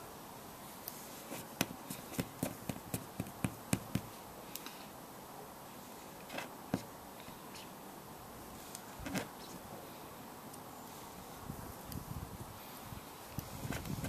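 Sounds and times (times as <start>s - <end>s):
hands clicking and tapping: 1.4s - 4.1s.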